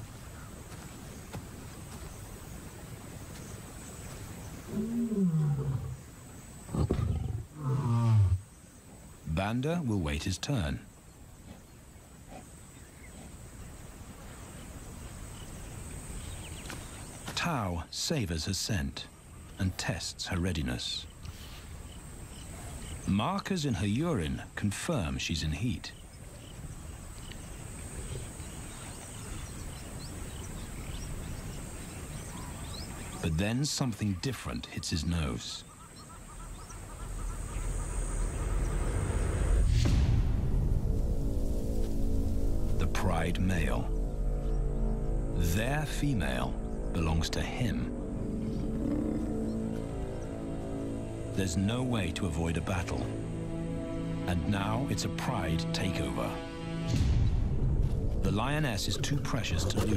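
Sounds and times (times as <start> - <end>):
lion snarling: 4.7 - 6.0, 6.7 - 8.4, 48.5 - 49.8, 59.4 - 59.9
lions growling: 4.7 - 6.0, 6.7 - 8.4, 48.4 - 50.3, 58.9 - 59.9
high insect drone: 35.6 - 42.8, 43.6 - 51.4.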